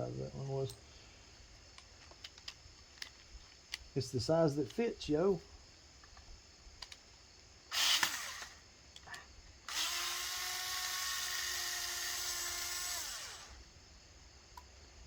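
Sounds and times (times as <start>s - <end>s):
power drill motor whining: 7.7s - 8.6s, 9.7s - 13.6s.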